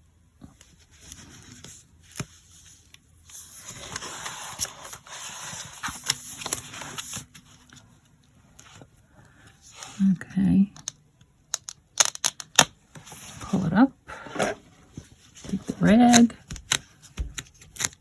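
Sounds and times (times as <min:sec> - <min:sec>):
paper scraping and rustling: 0:00.7 - 0:07.9, 0:13.0 - 0:18.0.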